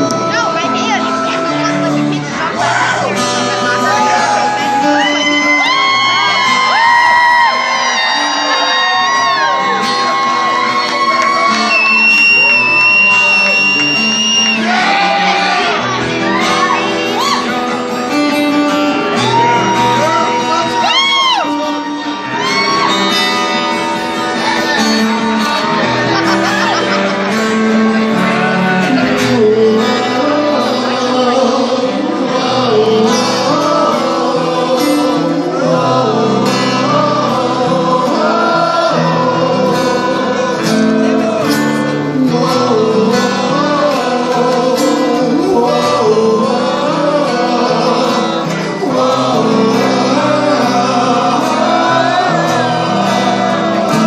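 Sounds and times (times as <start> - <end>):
man singing: 0.0 - 10.5, 11.3 - 16.0, 17.2 - 54.0
live band with guitars: 0.0 - 54.0.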